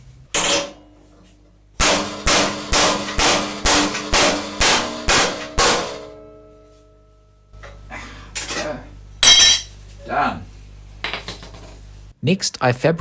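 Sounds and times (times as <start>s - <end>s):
hammer striking steel: 0.4s - 0.8s, 1.8s - 6.5s, 9.2s - 9.7s.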